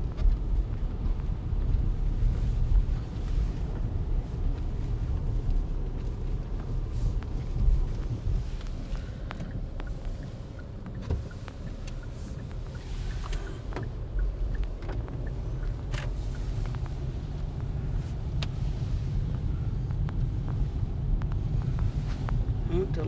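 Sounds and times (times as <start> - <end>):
car road and engine rumble: 0.0 - 23.0
small clicks and taps: 5.5 - 18.6, 19.2 - 22.5.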